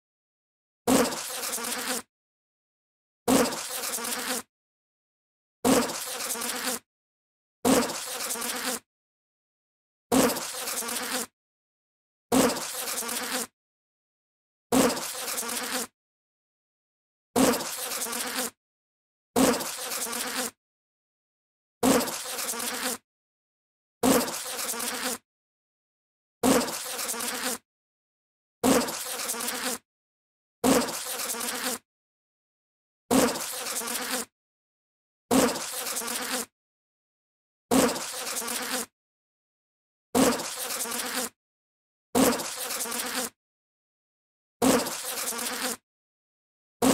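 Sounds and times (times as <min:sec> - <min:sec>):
bee buzzing: 0:00.9 - 0:02.1, 0:03.3 - 0:04.5, 0:05.7 - 0:06.8, 0:07.7 - 0:08.8, 0:10.1 - 0:11.3, 0:12.3 - 0:13.5, 0:14.7 - 0:15.9, 0:17.4 - 0:18.6, 0:19.4 - 0:20.6, 0:21.8 - 0:23.0, 0:24.0 - 0:25.2, 0:26.4 - 0:27.6, 0:28.6 - 0:29.8, 0:30.6 - 0:31.8, 0:33.1 - 0:34.3, 0:35.3 - 0:36.5, 0:37.7 - 0:38.9, 0:40.2 - 0:41.4, 0:42.2 - 0:43.4, 0:44.6 - 0:45.8.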